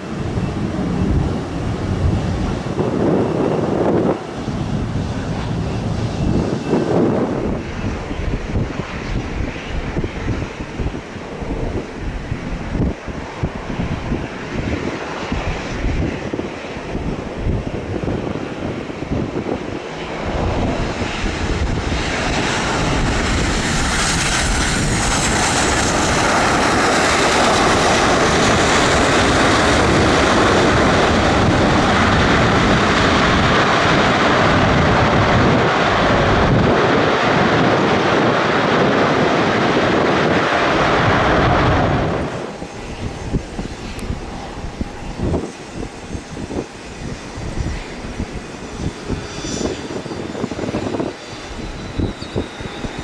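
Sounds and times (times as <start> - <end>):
aircraft engines roaring: 0.0 - 53.0.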